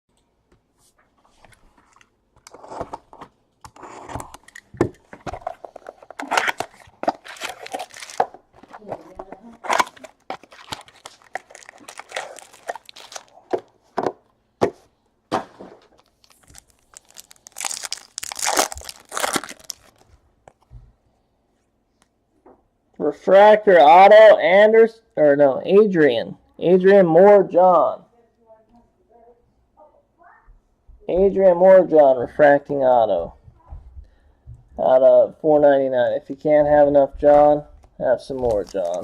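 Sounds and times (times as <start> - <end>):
cards being handled: 0.8 - 14.8, 15.6 - 20.7, 38.3 - 39.0
foil wrappers tearing and crinkling: 5.6 - 13.5, 15.8 - 20.1, 38.4 - 39.0.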